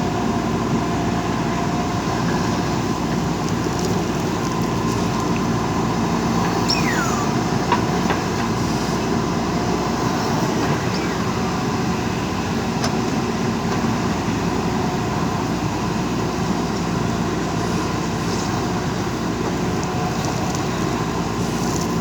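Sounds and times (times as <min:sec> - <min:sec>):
diesel engine running: 0:00.0 - 0:22.0
falling squeal: 0:06.3 - 0:08.0.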